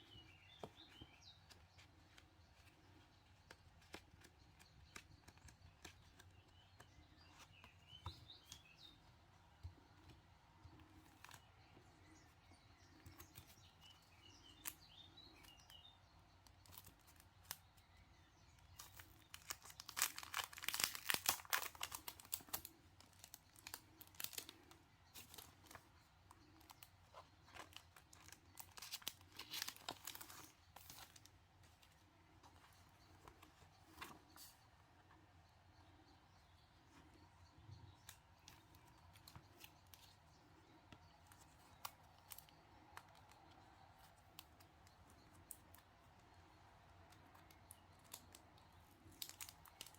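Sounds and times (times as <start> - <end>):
faint bird chirps: 0.0 - 49.9
packaging crinkling: 18.8 - 24.6, 27.5 - 31.3.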